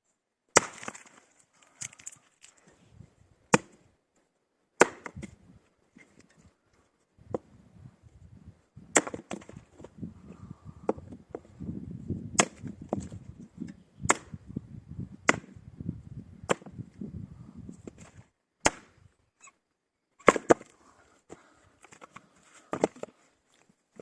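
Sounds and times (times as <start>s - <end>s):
axe chopping wood: 0.5s - 1.2s, 3.5s - 3.8s, 4.8s - 5.4s, 8.9s - 9.6s, 12.3s - 13.1s, 14.1s - 14.4s, 15.2s - 15.6s, 16.5s - 16.8s, 17.9s - 19.0s, 20.2s - 20.7s, 22.7s - 23.1s.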